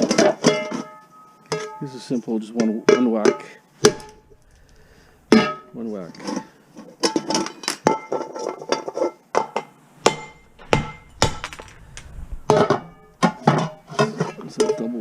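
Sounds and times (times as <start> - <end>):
hammer striking metal: 3.8 - 4.5.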